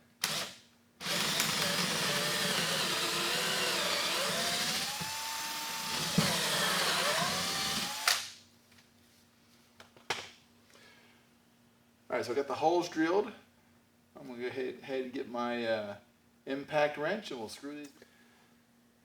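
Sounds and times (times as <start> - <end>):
power drill boring into wood: 0.2 - 8.3.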